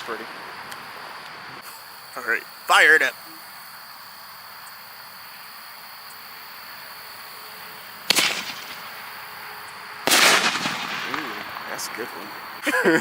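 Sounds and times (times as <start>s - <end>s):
fireworks crackling: 0.0s - 13.0s
fireworks bangs: 7.8s - 12.6s.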